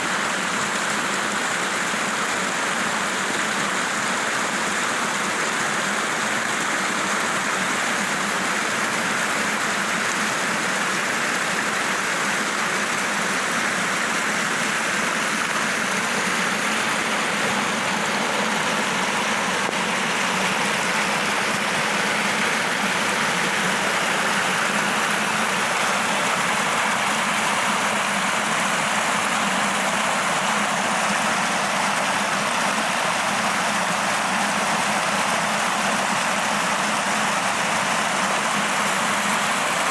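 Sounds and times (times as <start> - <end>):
rushing water: 0.0 - 39.9.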